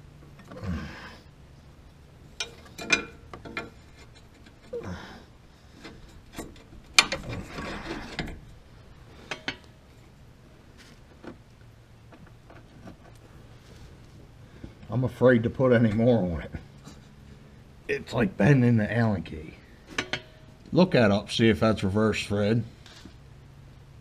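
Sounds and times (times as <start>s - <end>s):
metal hand tools clicking and scraping: 9.1s - 9.8s.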